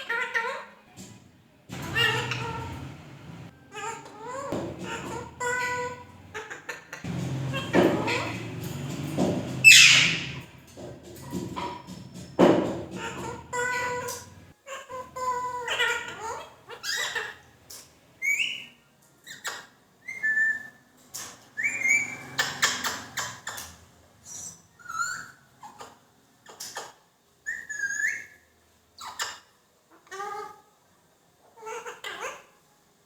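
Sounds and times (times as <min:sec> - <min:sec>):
parrot whistling and chirping: 0:01.8 - 0:10.4, 0:18.2 - 0:20.8, 0:21.5 - 0:23.6, 0:24.3 - 0:25.4, 0:27.4 - 0:28.4.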